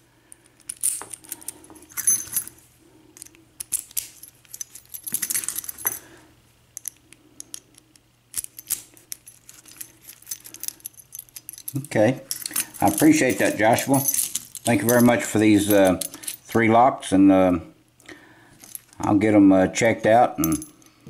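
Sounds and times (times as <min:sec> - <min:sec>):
metal keys clicking and clinking: 0:00.3 - 0:06.1, 0:06.8 - 0:16.6, 0:18.6 - 0:19.0, 0:20.4 - 0:21.0
keys jangling: 0:00.5 - 0:02.6, 0:03.2 - 0:06.1, 0:06.8 - 0:16.5.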